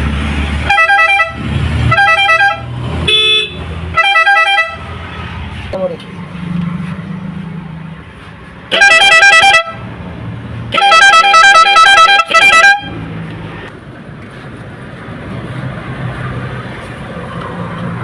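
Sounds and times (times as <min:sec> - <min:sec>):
warbling air horn blasts: 0:00.6 - 0:04.8, 0:08.7 - 0:09.8, 0:10.7 - 0:13.0.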